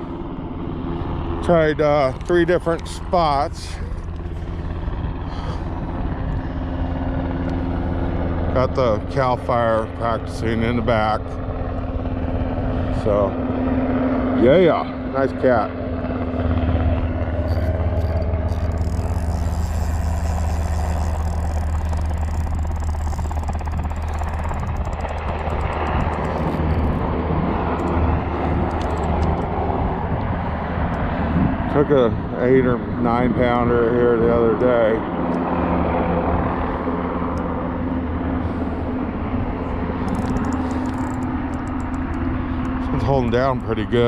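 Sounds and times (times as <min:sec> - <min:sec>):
helicopter rotor drone: 0:00.0 - 0:44.0
faint clicks: 0:17.5 - 0:27.0.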